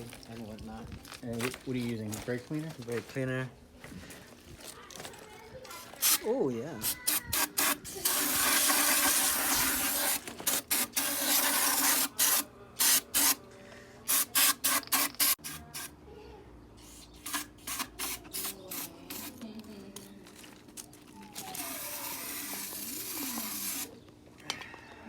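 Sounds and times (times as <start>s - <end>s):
aerosol spray bursts: 6.0s - 6.2s, 6.8s - 13.4s, 14.1s - 15.9s, 17.2s - 19.4s, 21.6s - 23.9s.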